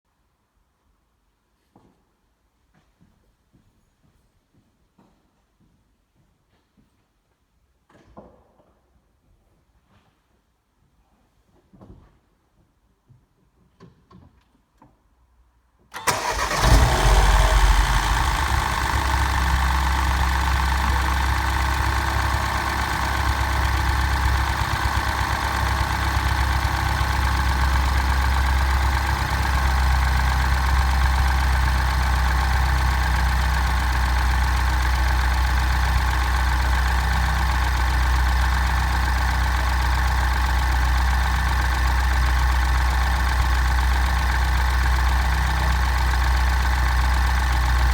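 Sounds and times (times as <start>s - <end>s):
car engine starting and idling: 16.0s - 47.9s.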